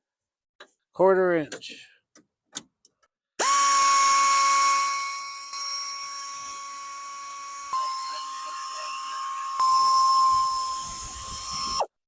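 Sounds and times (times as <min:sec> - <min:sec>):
power driver whining: 0:03.4 - 0:12.0.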